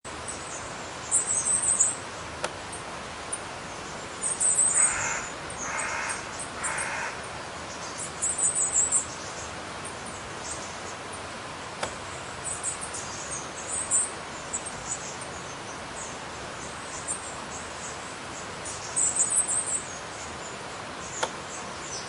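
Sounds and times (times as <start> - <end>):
birds chirping: 0.2 - 22.0
lower bird calls: 3.7 - 11.2.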